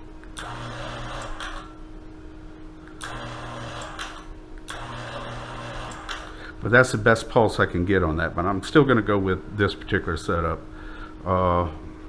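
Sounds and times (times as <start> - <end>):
actuator motor running: 0.2 - 1.8, 2.8 - 6.6.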